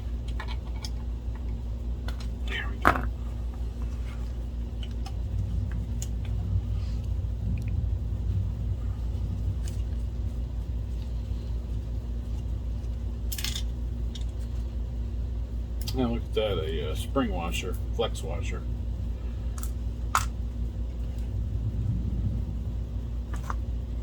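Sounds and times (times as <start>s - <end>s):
steady low hum: 0.0s - 24.0s
screwdriver and metal parts clinking: 13.3s - 14.6s.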